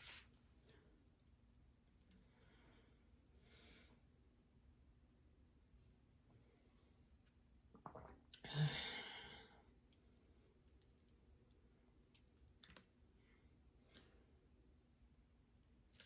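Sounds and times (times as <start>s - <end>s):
woman sighing: 8.4s - 9.4s.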